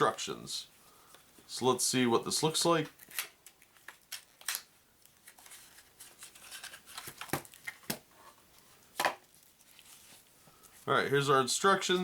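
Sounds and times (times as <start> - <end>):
paper and cardboard rustling: 3.0 - 10.8.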